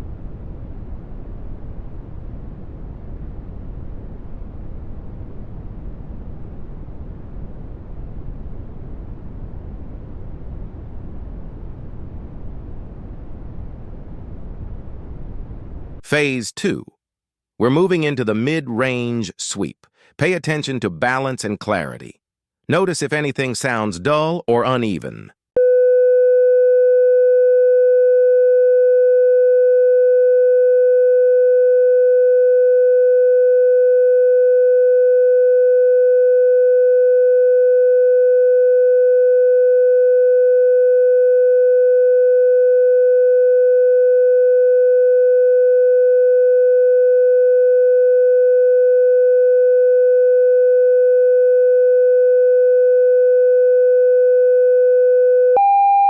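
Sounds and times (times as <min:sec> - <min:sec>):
steady electronic test tone: 0:55.5 - 0:56.0.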